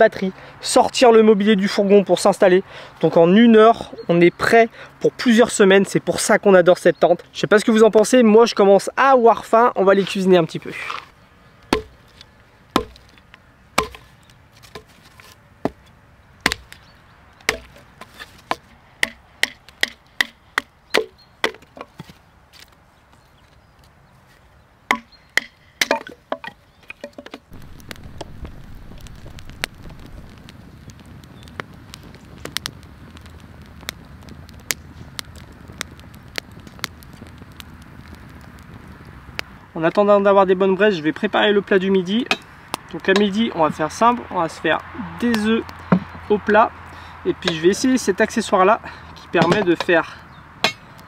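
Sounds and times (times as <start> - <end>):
wood fire crackling and popping: 10.0 - 21.7, 26.7 - 51.0
axe chopping wood: 11.7 - 12.0, 12.8 - 13.1, 13.8 - 14.9, 16.4 - 16.8, 17.4 - 21.9, 24.9 - 27.4, 49.4 - 49.9, 50.6 - 50.9.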